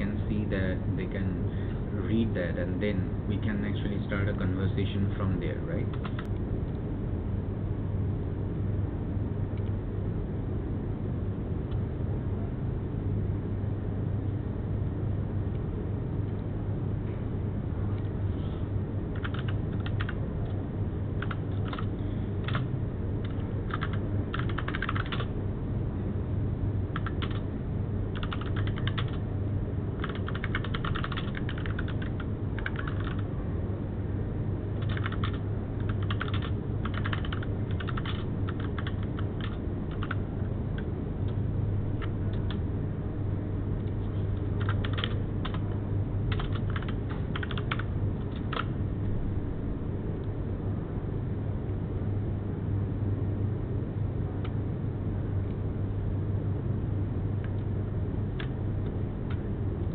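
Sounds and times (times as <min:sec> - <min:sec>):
low hum: 0:00.0 - 0:59.9
typing on computer keyboard: 0:05.9 - 0:06.3, 0:19.2 - 0:20.2, 0:21.2 - 0:25.3, 0:27.0 - 0:27.4, 0:28.2 - 0:29.2, 0:30.0 - 0:33.2, 0:34.8 - 0:40.2, 0:44.6 - 0:45.7, 0:46.3 - 0:48.7.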